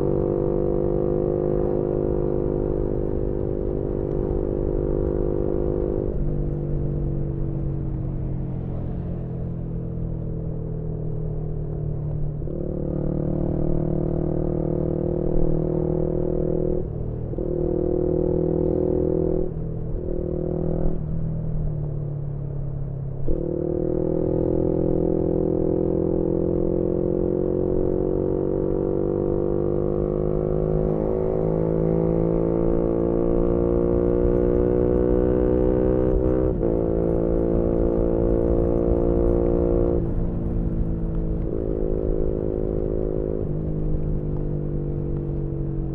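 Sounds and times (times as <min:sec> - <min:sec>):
motorcycle engine revving: 0:23.3 - 0:45.9.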